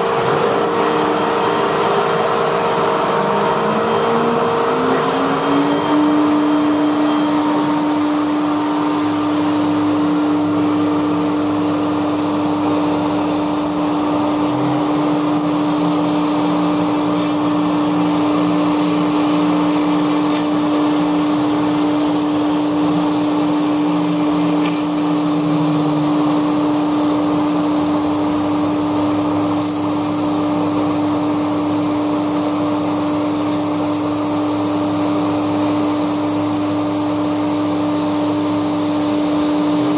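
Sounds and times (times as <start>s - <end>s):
low hum: 0.0s - 30.9s
cnc router spindle whine: 0.0s - 39.9s
continuous rushing noise: 0.0s - 39.9s.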